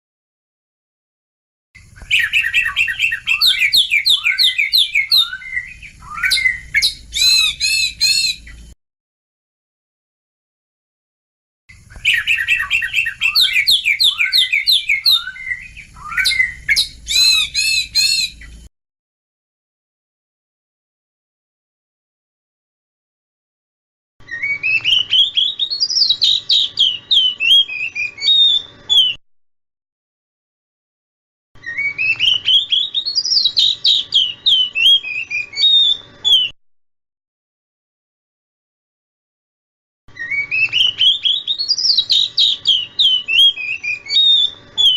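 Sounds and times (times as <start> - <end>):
bird whistled song: 1.8 - 8.8, 11.7 - 18.7, 24.2 - 29.2, 31.6 - 36.6, 40.1 - 44.9
harsh bird calls: 1.8 - 8.8, 11.7 - 18.7, 40.1 - 44.9.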